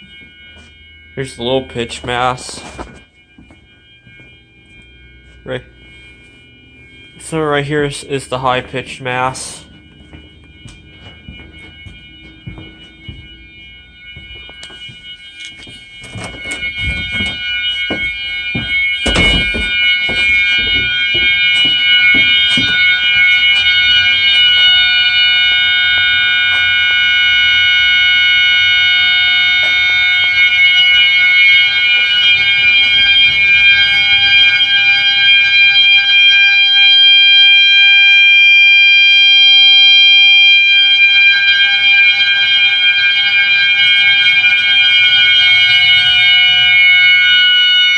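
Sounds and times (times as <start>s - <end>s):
loud continuous alarm tone: 0.0s - 47.9s
heavy knock: 18.6s - 22.8s.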